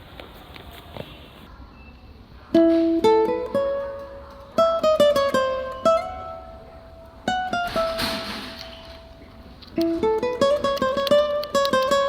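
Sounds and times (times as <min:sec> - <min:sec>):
plucked string instrument music: 0:02.6 - 0:12.0.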